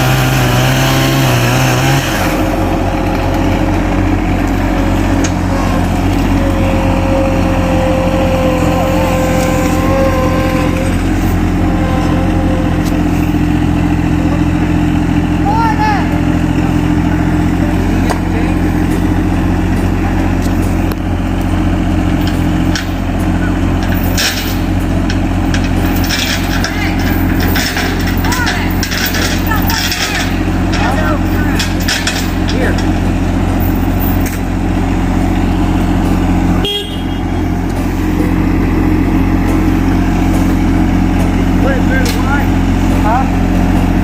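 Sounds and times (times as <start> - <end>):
engine running: 0.0 - 44.0
low motor hum: 0.0 - 44.0.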